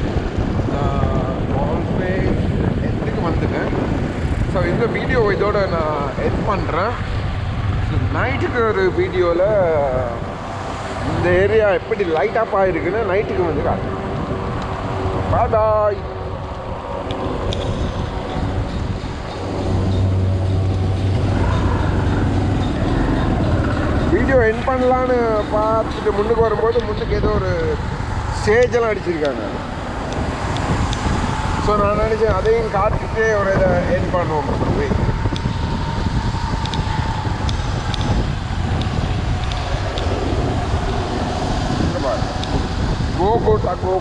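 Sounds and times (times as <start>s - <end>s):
road traffic noise: 0.0s - 44.0s
vehicle engine droning: 0.0s - 44.0s
wind on microphone: 0.0s - 44.0s.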